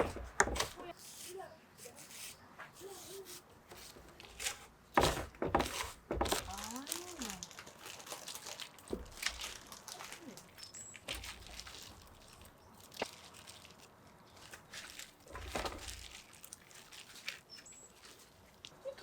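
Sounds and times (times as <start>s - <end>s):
dull thumps: 0.0s - 0.9s, 3.7s - 7.0s
crinkling: 0.0s - 1.0s, 2.8s - 19.0s.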